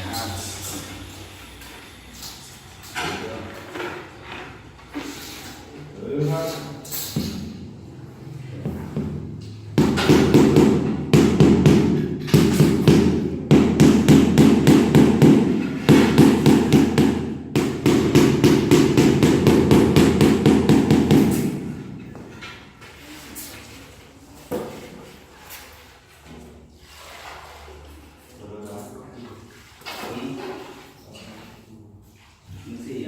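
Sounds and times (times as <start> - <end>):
rapid repeated knocking: 9.1 - 21.7.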